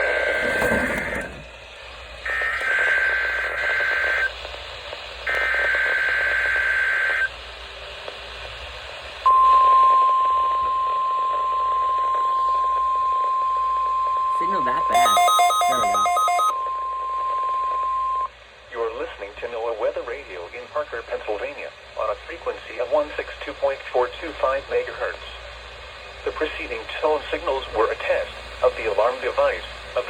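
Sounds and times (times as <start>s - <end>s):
steady warning alarm tone: 0.0s - 1.5s, 9.3s - 18.3s
light radio static: 14.2s - 30.0s.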